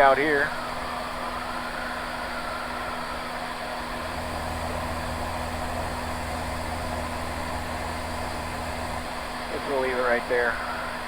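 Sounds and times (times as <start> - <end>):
aircraft engine droning: 0.0 - 11.0
deep low hum: 4.0 - 9.5.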